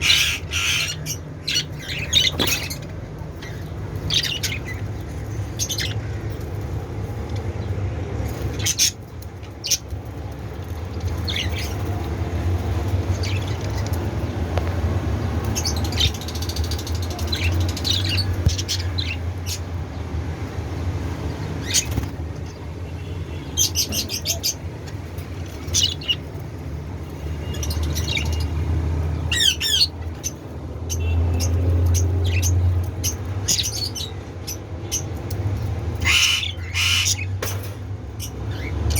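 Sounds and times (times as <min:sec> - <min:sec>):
budgerigars chirping: 0:00.0 - 0:02.8, 0:29.2 - 0:29.9, 0:36.0 - 0:37.3.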